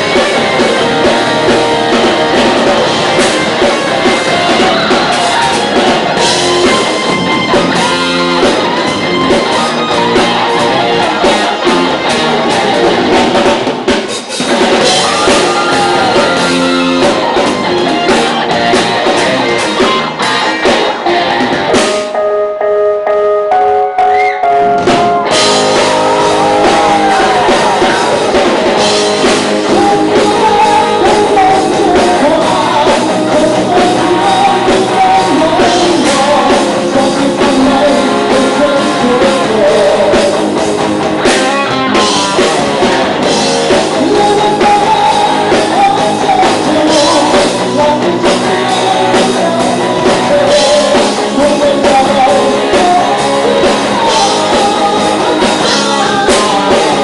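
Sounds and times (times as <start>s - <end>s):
distorted electric guitars: 0.0s - 57.0s
drum kit: 0.0s - 57.0s
person singing: 21.8s - 40.6s, 43.4s - 57.0s.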